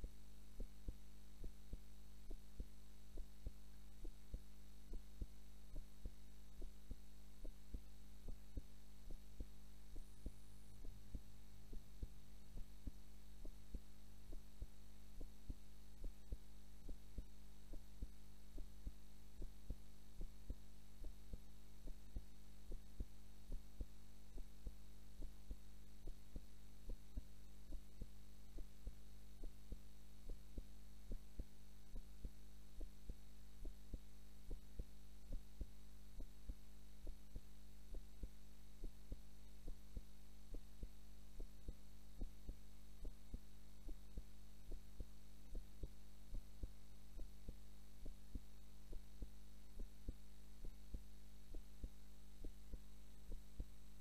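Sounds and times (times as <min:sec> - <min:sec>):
heartbeat thumping: 0:00.0 - 0:54.0
steady low hum: 0:00.0 - 0:54.0.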